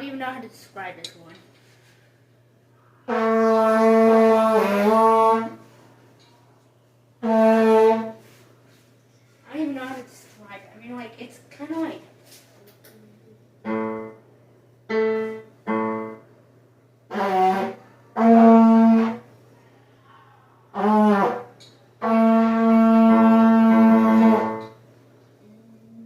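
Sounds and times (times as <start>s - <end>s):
buzzy trombone notes: 3.0s - 5.7s, 7.2s - 8.4s, 13.6s - 14.2s, 14.9s - 16.2s, 17.1s - 19.3s, 20.7s - 24.8s.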